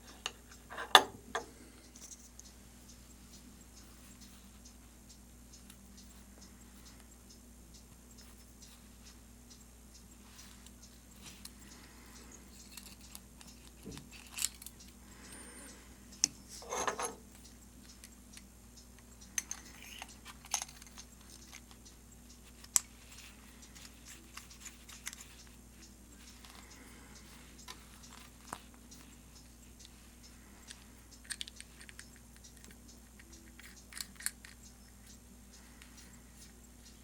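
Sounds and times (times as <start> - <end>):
faint steady hum: 0.0 - 37.0
small metal parts clicking: 0.1 - 2.5, 12.4 - 15.0, 19.2 - 25.6, 30.6 - 34.8.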